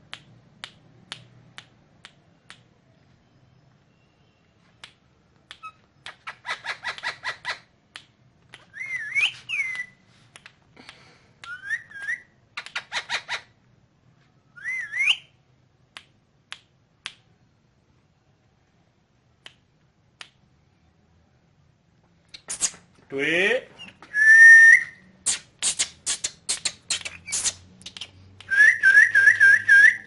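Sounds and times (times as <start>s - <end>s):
parakeet whistling: 8.7s - 10.0s, 14.6s - 15.3s, 28.5s - 30.0s.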